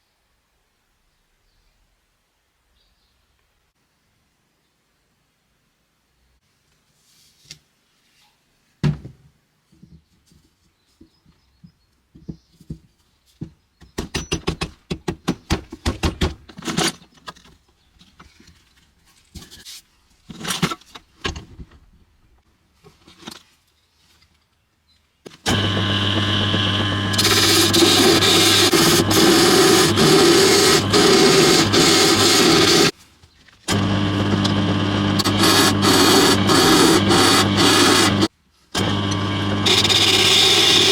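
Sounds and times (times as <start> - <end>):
electric power tool running: 25.5 - 32.9, 33.7 - 40.9.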